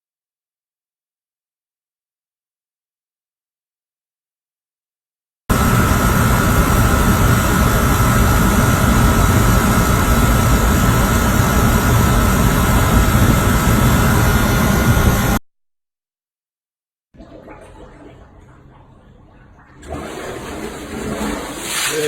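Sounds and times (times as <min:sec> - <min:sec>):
machine running with high whine: 0:05.5 - 0:15.4.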